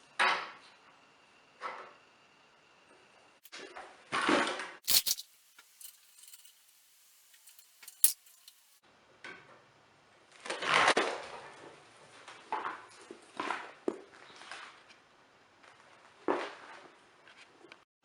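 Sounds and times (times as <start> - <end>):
rustling scrape: 4.8 - 8.8
clicks of metal and plastic: 4.9 - 8.8.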